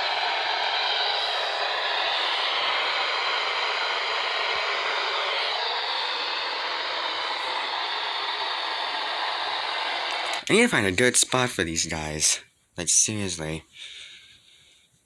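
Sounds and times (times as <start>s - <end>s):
radio static hiss: 0.0s - 10.8s.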